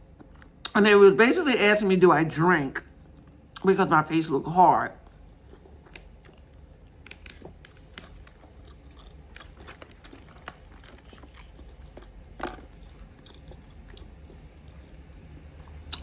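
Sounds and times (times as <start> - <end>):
person chewing food crunchily: 0.0 - 0.7, 4.9 - 16.0.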